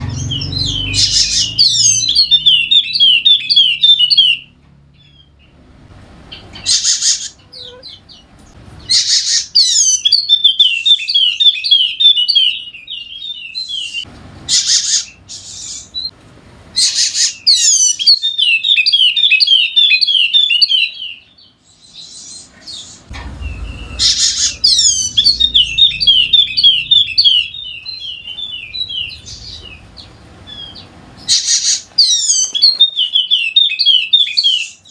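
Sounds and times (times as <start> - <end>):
bird twittering song: 0.0 - 5.6, 6.3 - 16.1, 16.8 - 34.9.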